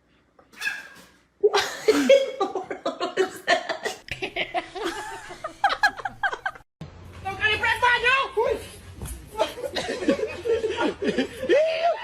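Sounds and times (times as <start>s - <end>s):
people laughing: 1.6s - 6.6s, 9.4s - 12.0s.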